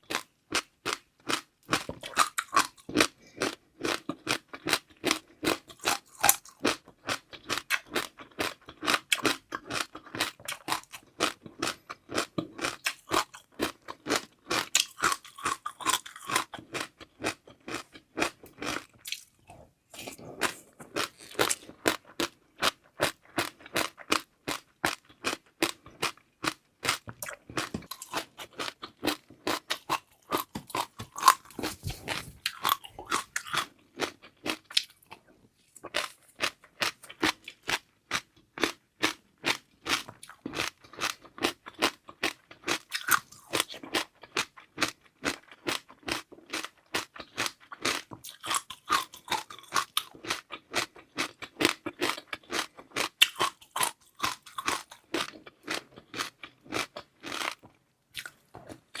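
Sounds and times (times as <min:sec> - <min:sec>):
crisp crunching and wet chewing: 0:00.0 - 0:59.0.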